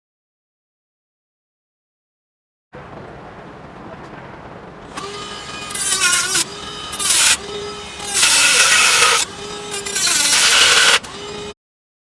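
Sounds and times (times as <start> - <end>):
power tool whining: 2.8 - 11.6
power tool cutting metal: 4.8 - 11.6.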